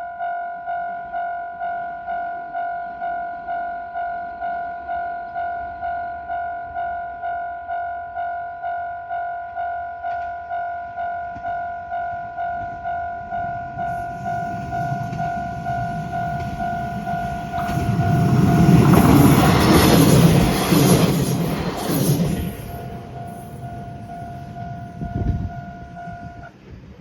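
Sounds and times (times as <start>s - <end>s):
level crossing warning bell: 0.1s - 26.5s
train rumble and rail noise: 8.6s - 27.0s.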